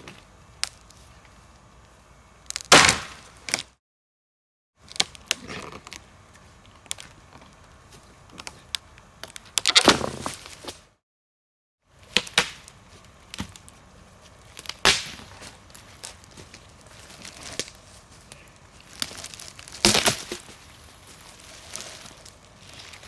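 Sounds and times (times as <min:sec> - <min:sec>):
wooden branches cracking and snapping: 0:02.5 - 0:03.7, 0:08.4 - 0:10.8, 0:12.0 - 0:13.8, 0:14.4 - 0:23.0.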